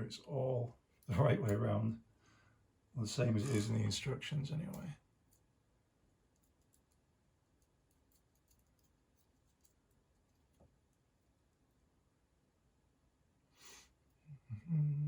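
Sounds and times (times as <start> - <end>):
small metal parts clicking: 6.3 - 7.0, 7.6 - 10.6.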